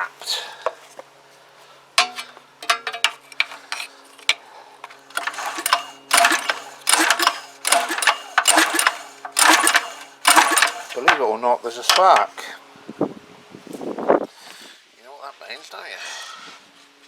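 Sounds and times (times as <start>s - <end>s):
handling clicks and knocks: 2.0s - 4.4s, 5.1s - 12.4s
recoil starter pulls: 2.0s - 4.4s, 5.1s - 12.5s.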